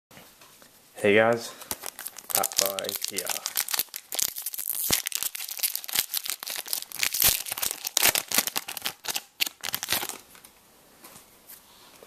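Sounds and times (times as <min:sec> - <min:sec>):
card wrappers torn and crinkled: 0:01.6 - 0:10.3.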